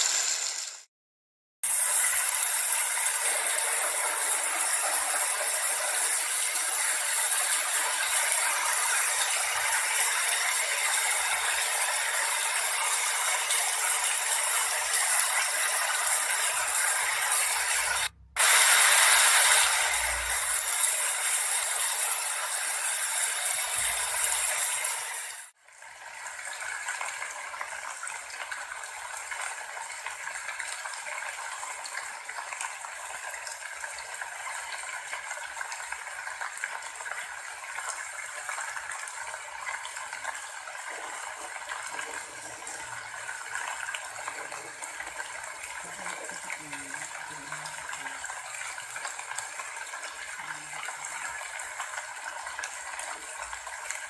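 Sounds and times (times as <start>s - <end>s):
rain falling: 1.7s - 25.5s, 40.0s - 54.0s.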